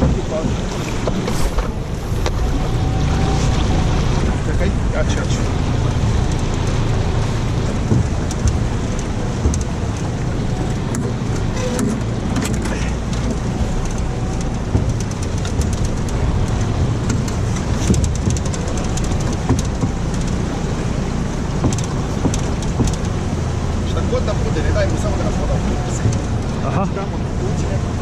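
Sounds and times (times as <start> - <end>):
boat engine low rumble: 0.0 - 28.0
light clicks and ticks: 7.6 - 20.5, 21.5 - 23.2, 25.9 - 26.6.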